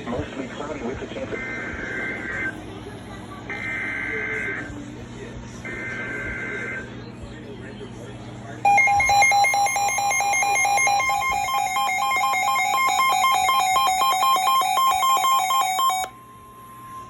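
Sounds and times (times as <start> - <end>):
two-pitch electronic beeping alarm: 8.7 - 17.0.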